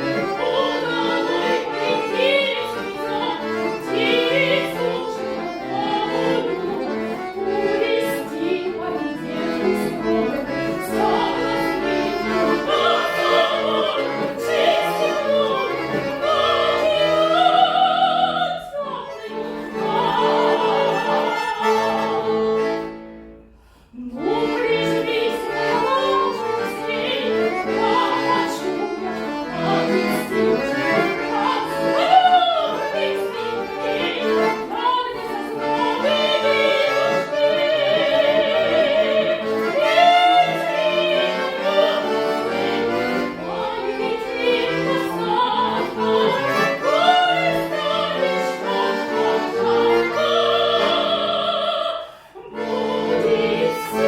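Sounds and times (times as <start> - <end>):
trained voice singing with vibrato: 0.0 - 22.8, 24.0 - 54.0
instrumental held chords: 0.0 - 54.0.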